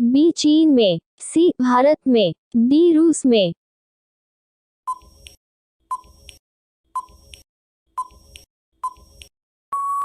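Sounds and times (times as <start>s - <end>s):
long steady beep: 9.7s - 10.0s.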